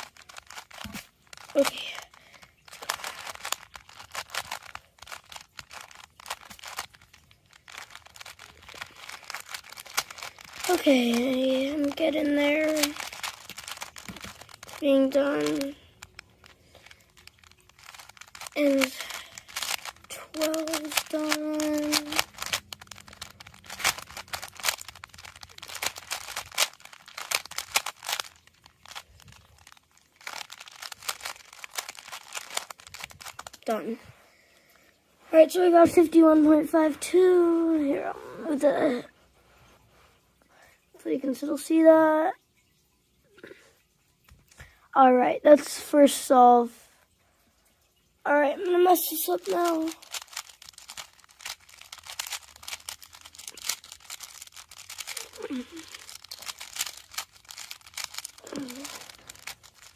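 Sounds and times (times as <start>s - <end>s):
plastic puzzle cube clicking: 0.0s - 33.8s, 48.6s - 59.9s.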